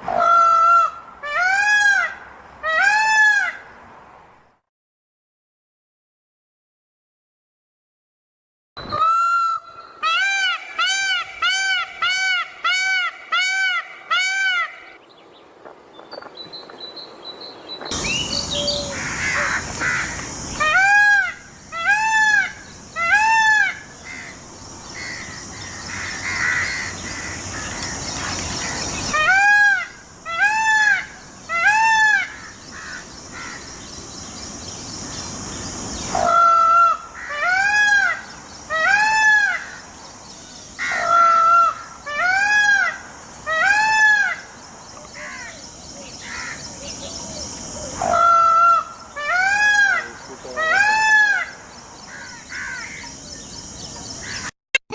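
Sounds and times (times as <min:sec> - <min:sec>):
peacock honking calls: 0:00.1 - 0:03.7, 0:08.9 - 0:15.0, 0:18.0 - 0:33.7, 0:36.1 - 0:39.8, 0:40.8 - 0:44.5, 0:47.8 - 0:53.1
steady hiss: 0:17.9 - 0:42.1, 0:44.4 - 0:49.2.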